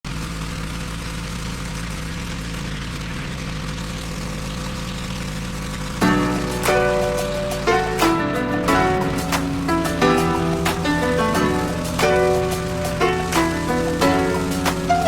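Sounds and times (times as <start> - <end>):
pressure washer running: 0.2 - 15.0
music with plucked notes: 6.0 - 15.0.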